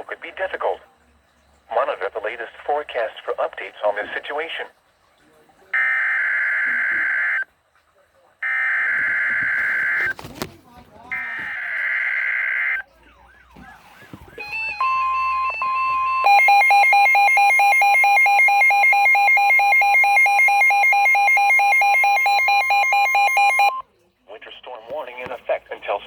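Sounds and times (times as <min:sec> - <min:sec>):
steady high alert tone: 0:14.4 - 0:23.8.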